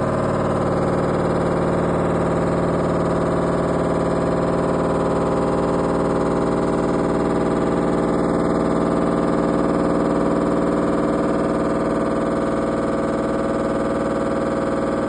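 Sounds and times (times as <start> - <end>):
washing machine spinning: 0.0 - 15.0.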